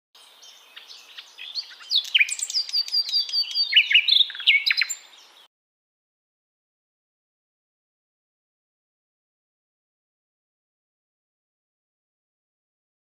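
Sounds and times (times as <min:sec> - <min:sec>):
songbird singing: 0:00.2 - 0:05.5.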